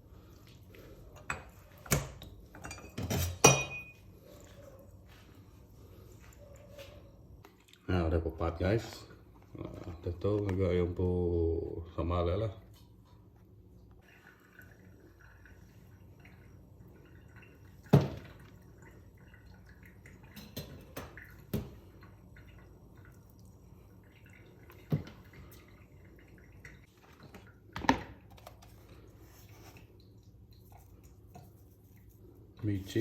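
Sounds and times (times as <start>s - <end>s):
kitchen knocks and clinks: 1.2s - 4.0s, 20.3s - 21.8s.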